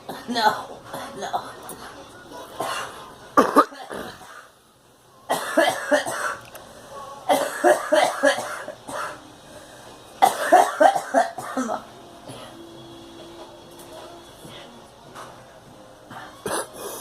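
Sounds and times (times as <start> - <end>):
girl coughing: 3.4 - 4.2, 5.3 - 6.4, 7.3 - 9.2, 10.2 - 12.5, 16.4 - 17.0.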